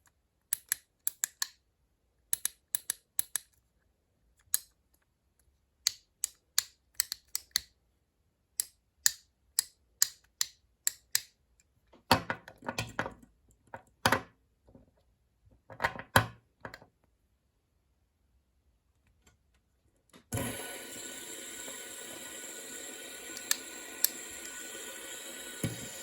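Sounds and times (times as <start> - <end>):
plastic fidget toy clicking: 0.5 - 1.6, 2.3 - 3.5, 5.8 - 7.7.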